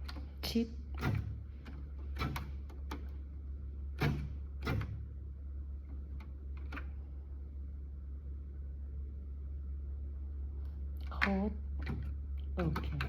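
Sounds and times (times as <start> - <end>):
steady low hum: 0.0 - 13.0
electric typewriter clacking: 0.9 - 3.0, 4.0 - 5.0.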